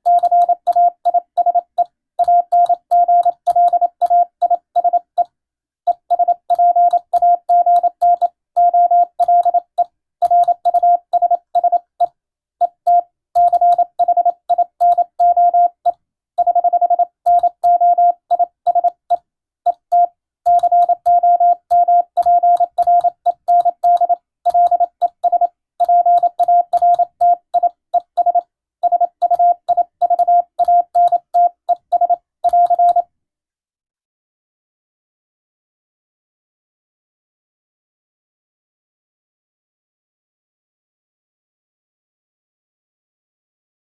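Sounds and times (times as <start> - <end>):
morse code tone: 0.0 - 5.2, 5.9 - 19.1, 19.7 - 33.0.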